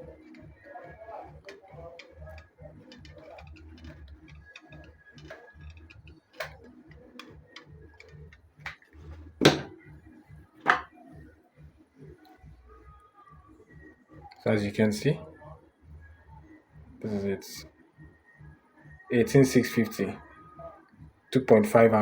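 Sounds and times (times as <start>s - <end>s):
battery cells clicking and knocking: 1.4s - 9.8s.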